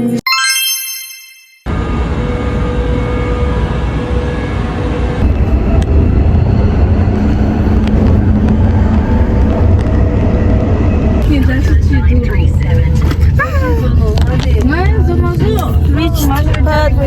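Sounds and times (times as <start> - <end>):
moving vehicle rumble: 1.7 - 17.0.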